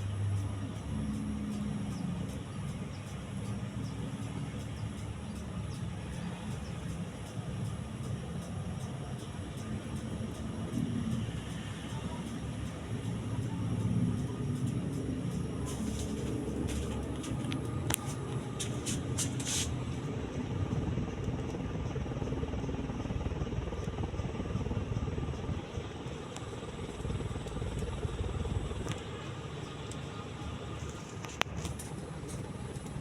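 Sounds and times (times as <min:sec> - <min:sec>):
ceiling fan running: 0:00.0 - 0:33.0.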